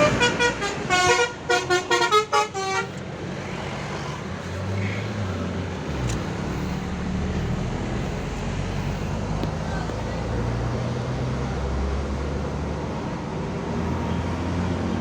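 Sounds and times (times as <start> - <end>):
bus musical horn playing a tune: 0.0 - 3.0
bus engine running: 0.0 - 15.0
traffic noise: 0.0 - 15.0.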